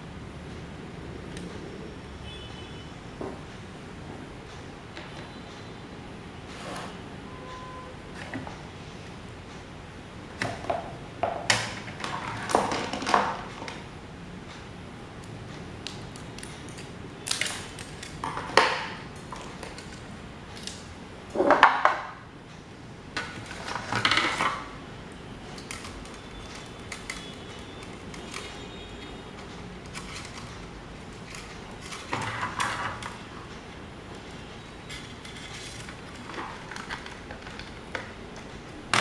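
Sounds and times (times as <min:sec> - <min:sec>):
metal fan parts clinking: 0:23.2 - 0:39.0.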